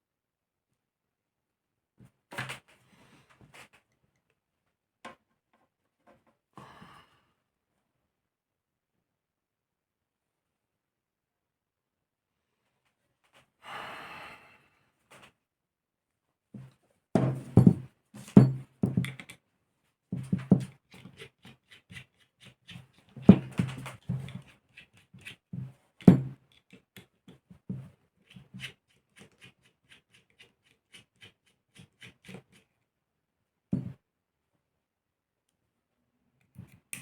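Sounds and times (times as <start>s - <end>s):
tools knocking and clicking: 17.2s - 19.4s.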